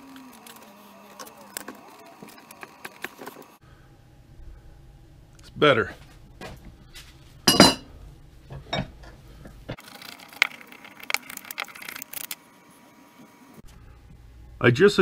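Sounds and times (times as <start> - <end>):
metal tools clinking and knocking: 7.5 - 7.8.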